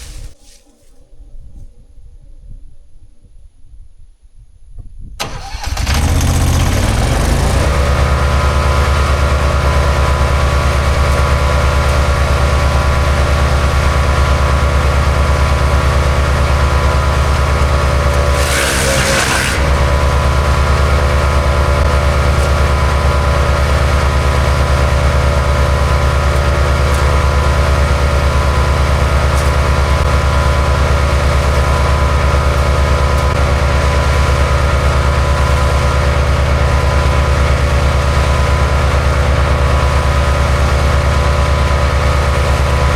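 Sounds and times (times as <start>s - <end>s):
wood chipper engine running: 5.2s - 42.9s
branch shredding: 17.9s - 20.6s.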